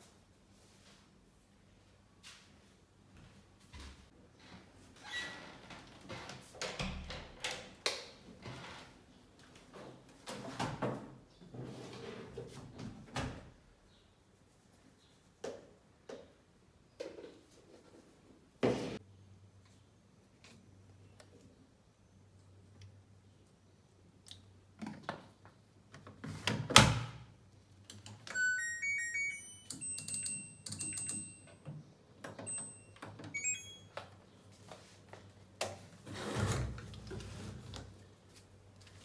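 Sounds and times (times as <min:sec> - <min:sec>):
short electronic beeps: 0:32.5 - 0:33.9.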